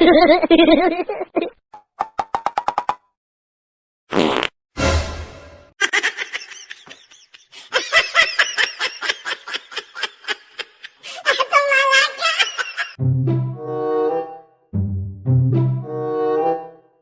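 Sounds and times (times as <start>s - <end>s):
person laughing hard: 5.8s - 13.0s.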